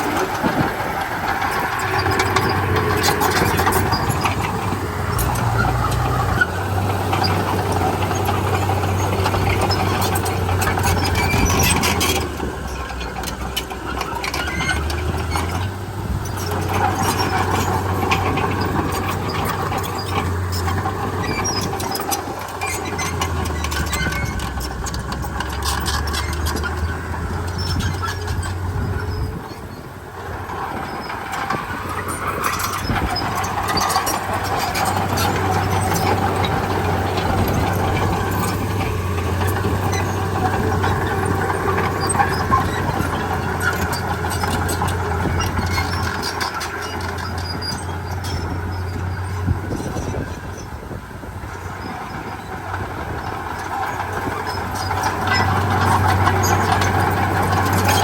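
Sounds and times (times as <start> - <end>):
metallic clicks and clanks: 0.0 - 29.4, 52.7 - 58.0
bulldozer diesel engine working: 0.0 - 58.0.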